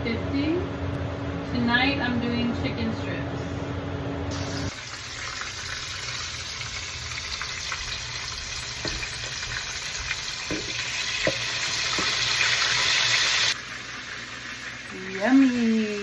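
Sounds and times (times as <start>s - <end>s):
chicken deep-frying in oil: 4.3s - 16.0s.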